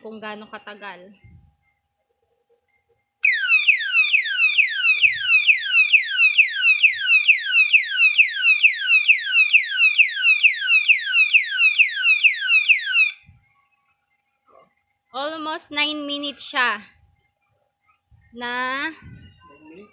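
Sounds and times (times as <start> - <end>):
alarm siren chirping: 3.2 - 13.3.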